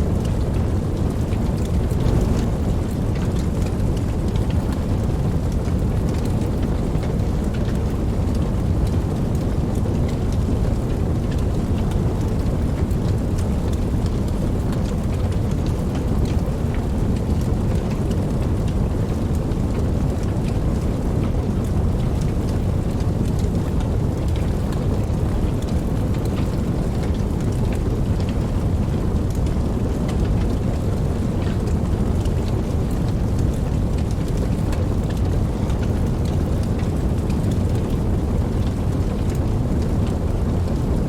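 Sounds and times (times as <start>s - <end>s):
raindrop ticks: 0.0s - 41.0s
steady rain: 0.0s - 41.0s.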